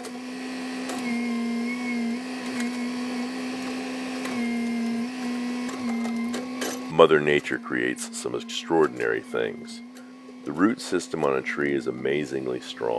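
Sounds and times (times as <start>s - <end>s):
chainsaw running at high revs: 0.0s - 12.9s.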